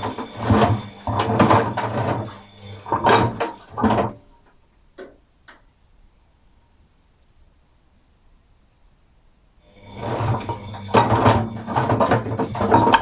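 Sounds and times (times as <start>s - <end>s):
washing machine water sloshing: 0.0s - 4.4s, 9.9s - 13.0s
faint motor hum: 0.0s - 13.0s.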